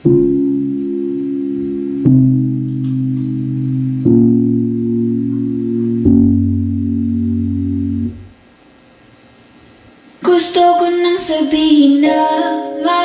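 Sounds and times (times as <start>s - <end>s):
guitar and bass chords: 0.0s - 8.4s.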